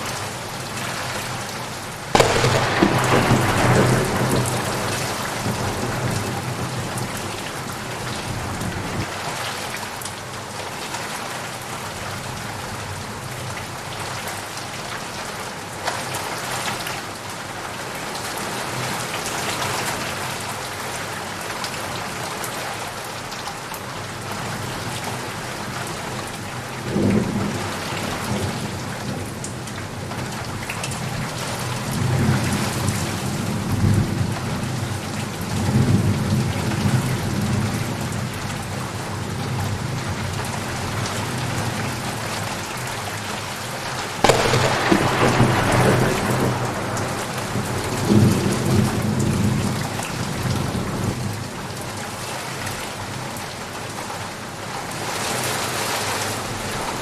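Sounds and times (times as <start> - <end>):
heavy rain: 0.0 - 57.0
rolling thunder: 2.1 - 9.1, 44.2 - 49.8.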